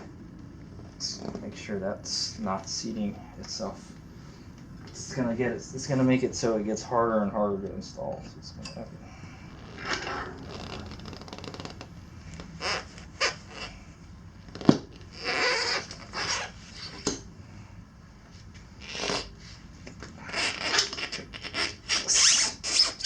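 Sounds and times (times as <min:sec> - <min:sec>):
rubber tire squeaks and scrapes: 0:00.0 - 0:02.6, 0:09.3 - 0:17.2, 0:18.8 - 0:19.6, 0:20.2 - 0:23.0.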